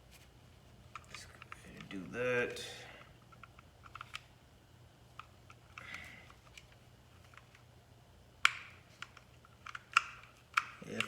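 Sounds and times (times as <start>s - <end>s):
plastic parts clicking and tapping: 3.3s - 4.3s, 8.4s - 11.0s.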